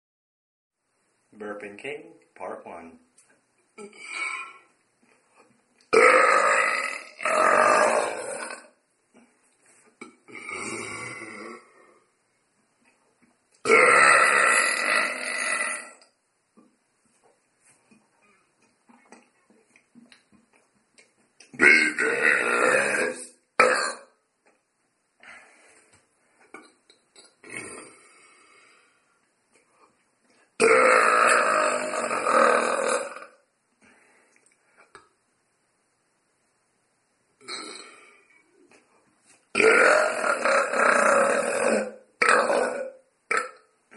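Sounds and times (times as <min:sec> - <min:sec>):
long loud burp: 0:03.8 - 0:04.7, 0:05.9 - 0:08.8, 0:10.0 - 0:12.1, 0:13.6 - 0:16.2, 0:21.6 - 0:24.2, 0:27.2 - 0:28.6, 0:30.6 - 0:33.5, 0:37.4 - 0:38.3, 0:39.5 - 0:43.8
person belching: 0:03.8 - 0:04.7, 0:05.9 - 0:08.8, 0:10.0 - 0:11.9, 0:13.6 - 0:16.1, 0:21.5 - 0:24.2, 0:26.5 - 0:28.2, 0:30.6 - 0:33.4, 0:37.4 - 0:38.3, 0:39.5 - 0:43.8.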